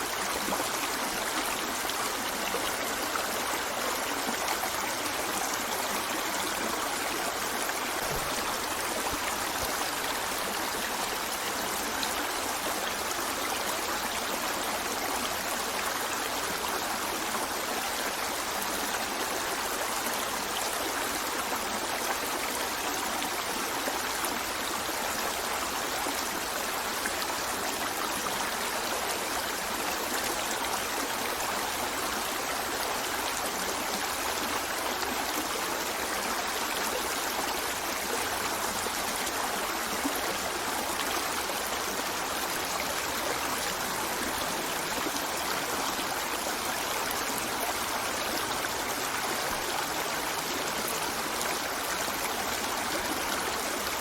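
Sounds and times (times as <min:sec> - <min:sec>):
river flowing: 0:00.0 - 0:54.0.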